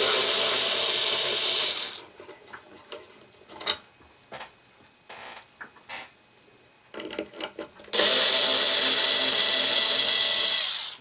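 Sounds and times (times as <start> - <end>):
electric drill spinning: 0.0 - 2.0, 7.9 - 11.0.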